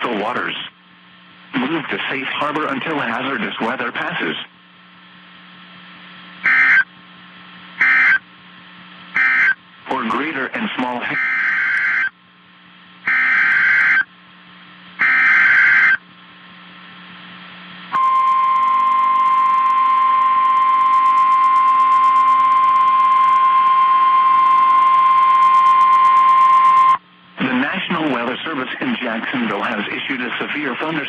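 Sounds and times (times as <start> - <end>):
steady warning alarm tone: 6.4 - 6.9, 7.8 - 8.2, 9.2 - 9.6, 11.1 - 12.2, 13.0 - 14.1, 15.0 - 16.0, 17.9 - 27.0
screeching digital data burst: 15.0 - 16.0.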